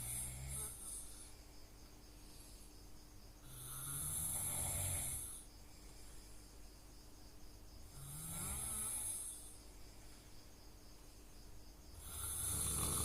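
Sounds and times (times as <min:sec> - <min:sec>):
person snoring: 0:00.0 - 0:01.2, 0:03.4 - 0:05.4, 0:07.9 - 0:09.5, 0:12.0 - 0:13.0.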